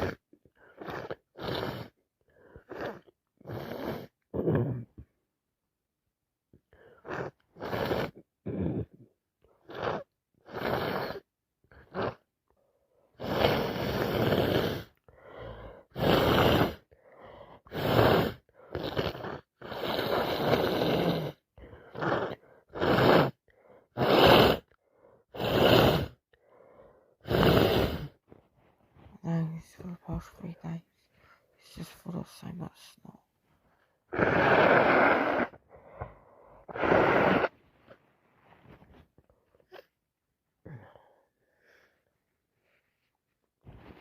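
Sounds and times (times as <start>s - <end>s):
woman sniffing: 34.1s - 39.9s.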